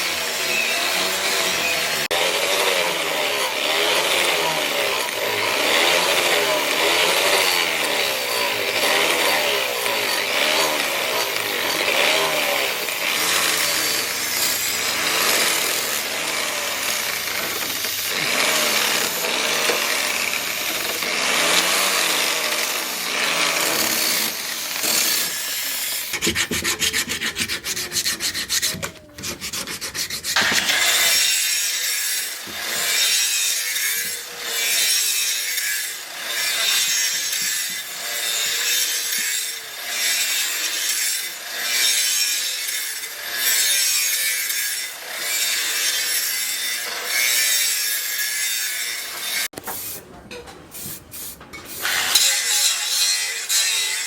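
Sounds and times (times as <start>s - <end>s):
tool rasping wood: 0.0s - 35.1s
sawing or filing strokes: 0.0s - 40.9s, 50.8s - 54.0s.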